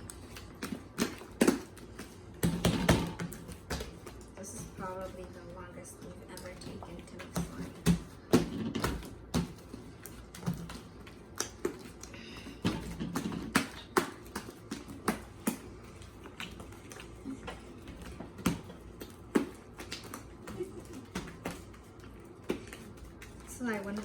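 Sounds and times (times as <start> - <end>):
slime kneaded clicking and popping: 6.3 - 24.0.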